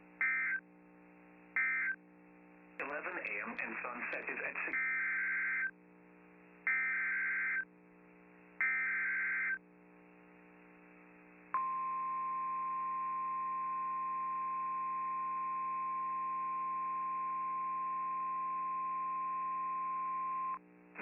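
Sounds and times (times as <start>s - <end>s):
low steady hum: 0.0s - 21.0s
steady warning alarm tone: 0.2s - 0.6s, 1.6s - 2.0s, 4.7s - 5.7s, 6.7s - 7.6s, 8.6s - 9.6s.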